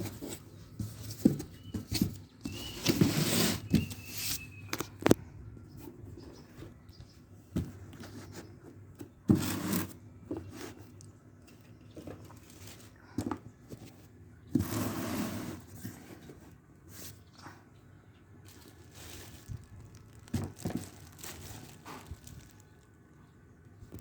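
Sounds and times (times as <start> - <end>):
packaging rustling scrapes: 0.0 - 5.1, 9.3 - 11.0, 12.2 - 13.0, 18.5 - 23.0
packaging clicks and knocks: 18.6 - 22.8.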